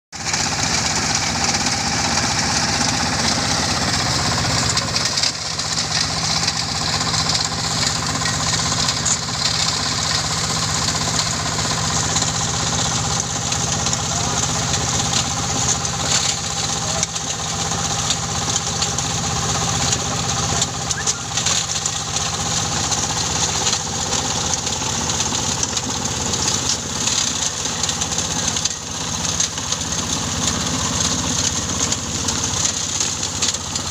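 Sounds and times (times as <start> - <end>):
stone-grinding machine running: 0.2 - 33.9.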